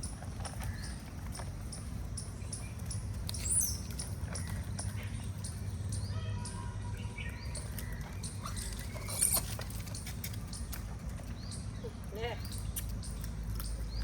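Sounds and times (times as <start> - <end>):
squeaky animal calls and chirps: 7.4 - 10.7
clicks and rustles: 7.6 - 14.0.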